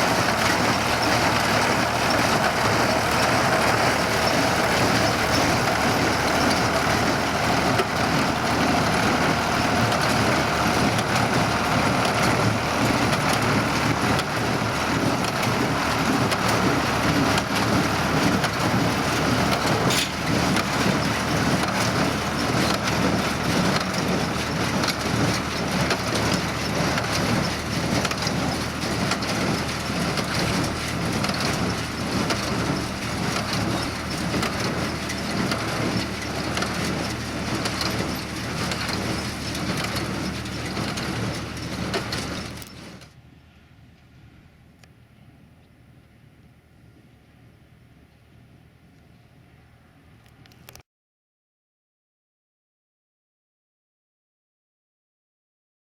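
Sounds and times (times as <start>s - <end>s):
baler crunching hay: 0.0s - 43.0s
tractor engine running: 0.0s - 44.0s.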